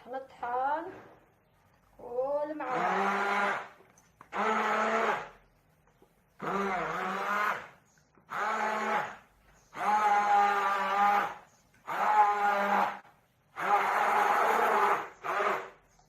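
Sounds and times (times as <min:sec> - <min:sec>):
blender running in pulses: 0:06.4 - 0:09.2, 0:13.6 - 0:15.8.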